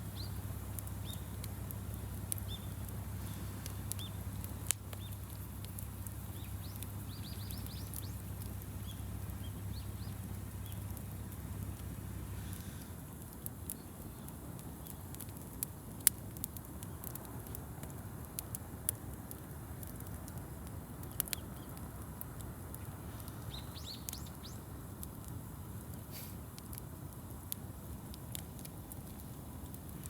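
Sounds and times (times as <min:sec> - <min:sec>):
low steady rumble: 0:00.0 - 0:14.6
campfire crackling and popping: 0:00.0 - 0:30.0
small bird chirping: 0:00.1 - 0:00.4, 0:01.0 - 0:02.8, 0:06.2 - 0:10.8, 0:23.4 - 0:24.6.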